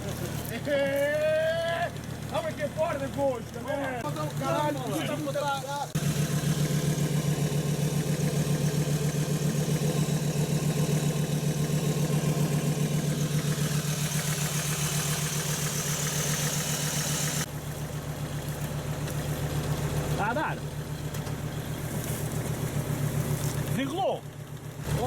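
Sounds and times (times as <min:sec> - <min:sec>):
diesel engine running: 0:00.0 - 0:25.0.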